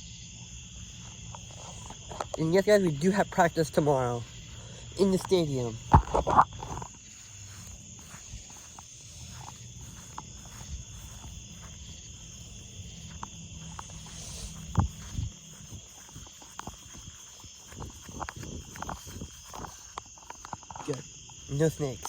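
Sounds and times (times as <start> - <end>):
footsteps walking: 0.4 - 22.0
high-pitched hum: 4.1 - 19.3.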